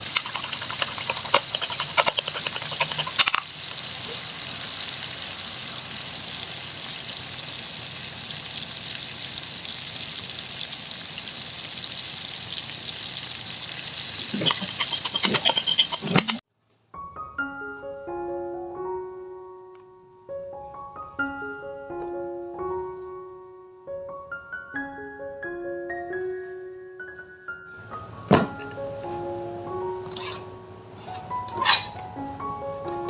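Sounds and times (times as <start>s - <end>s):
utensil scraping a pan: 0.0s - 3.5s, 14.1s - 16.4s
food sizzling in hot oil: 0.0s - 16.4s.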